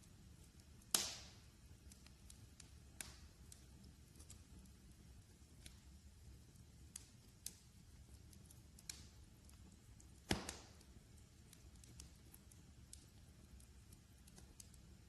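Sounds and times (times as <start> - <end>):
wood fire crackling: 0.0 - 15.0
loud fire pop: 0.9 - 1.4, 10.2 - 10.8.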